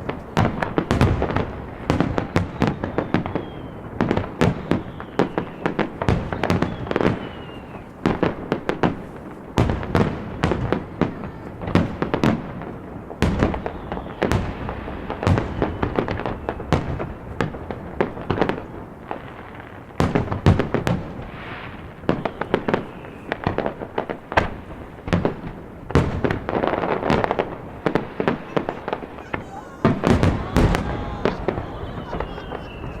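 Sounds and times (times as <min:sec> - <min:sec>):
firework bangs: 0:00.0 - 0:33.0
falling firework whistle: 0:02.3 - 0:07.9, 0:13.5 - 0:14.5, 0:15.3 - 0:16.8, 0:27.9 - 0:33.0
firework crackling: 0:11.4 - 0:33.0.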